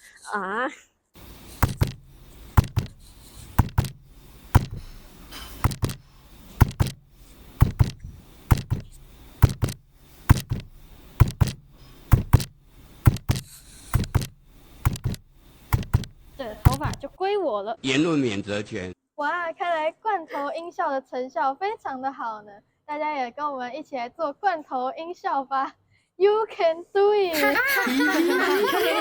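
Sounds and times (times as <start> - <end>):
punch and hit thuds: 1.2 - 17.2.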